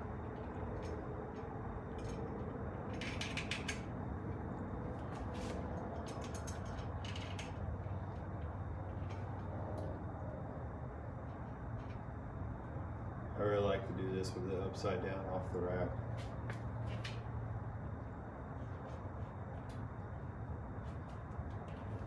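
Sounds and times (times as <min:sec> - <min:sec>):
low background hum: 0:00.0 - 0:22.0
metallic clicks of bicycle parts: 0:02.9 - 0:03.9, 0:06.0 - 0:07.6.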